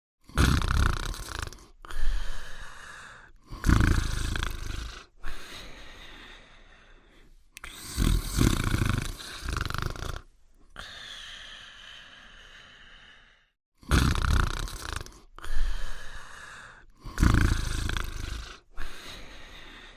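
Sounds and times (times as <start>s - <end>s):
cartoon dog snoring: 0.2s - 6.2s, 7.6s - 11.2s, 13.8s - 19.9s.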